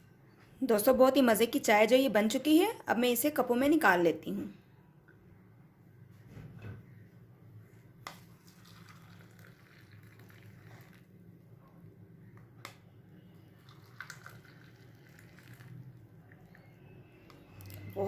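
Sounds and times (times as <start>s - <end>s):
tea pouring through a strainer: 8.1s - 11.2s, 13.4s - 16.9s.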